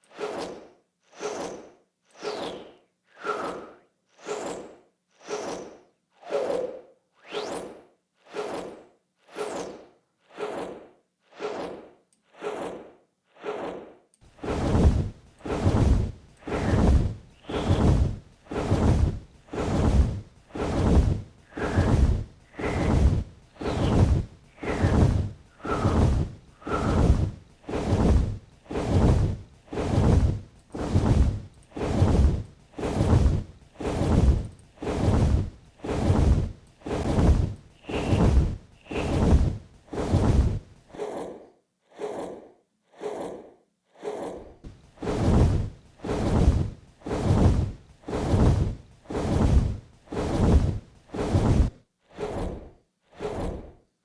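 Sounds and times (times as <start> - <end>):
dragon wing flaps whooshing: 14.3 - 41.5, 44.0 - 53.8.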